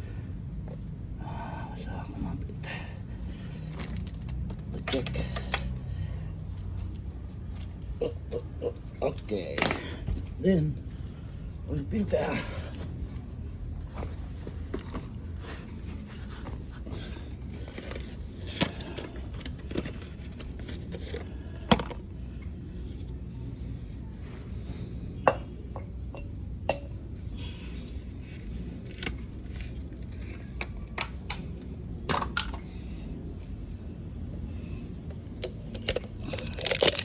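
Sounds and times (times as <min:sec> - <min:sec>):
steady low hum: 0:00.0 - 0:37.0
tools clinking and scraping: 0:03.6 - 0:05.8, 0:08.7 - 0:10.4, 0:25.2 - 0:27.0.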